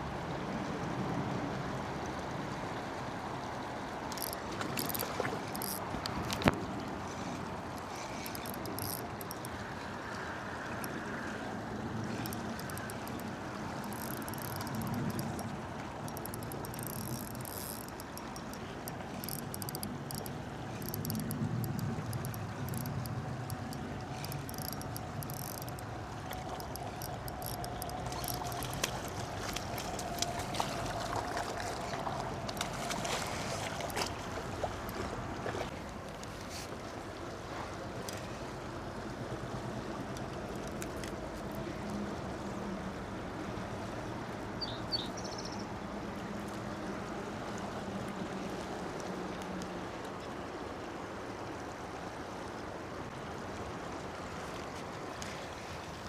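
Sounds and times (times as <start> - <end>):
river water rushing: 0.0 - 45.0
sharp clicks and ticks: 4.1 - 6.6, 7.8 - 9.6, 12.2 - 30.3.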